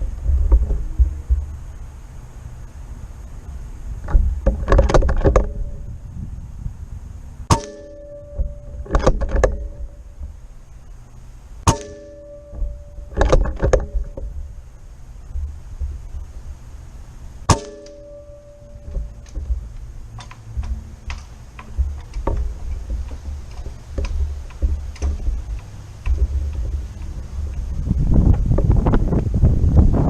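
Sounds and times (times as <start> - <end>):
air rifle shots: 7.5 - 8.3, 11.7 - 14.1, 17.5 - 19.4.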